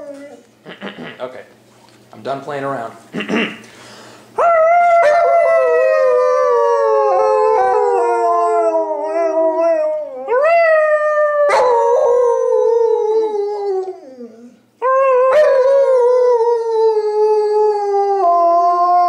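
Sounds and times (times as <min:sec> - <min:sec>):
dog howling: 0:04.4 - 0:19.0.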